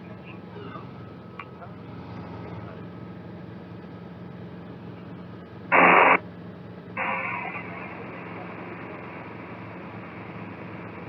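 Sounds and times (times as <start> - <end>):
helicopter engine and rotor drone: 0.0 - 11.0
radio static hiss: 5.7 - 6.2, 7.0 - 11.0.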